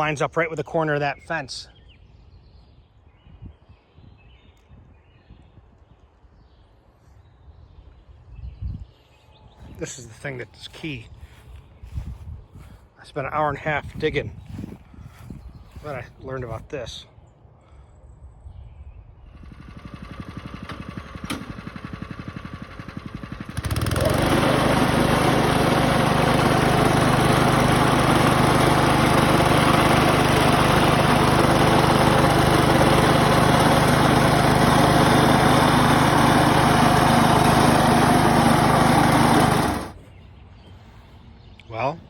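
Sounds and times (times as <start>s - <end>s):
small gas engine running: 19.3s - 40.0s.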